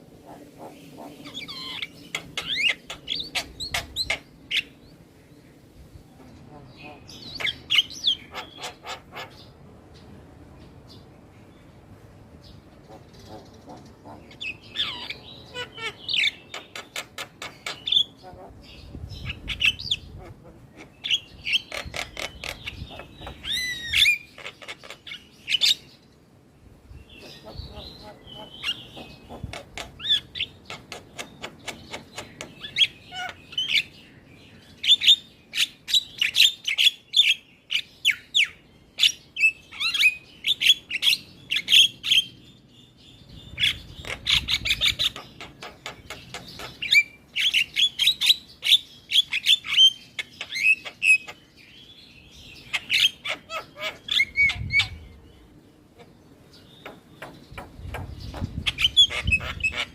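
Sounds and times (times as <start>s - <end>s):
myna bird singing: 0.0s - 59.9s.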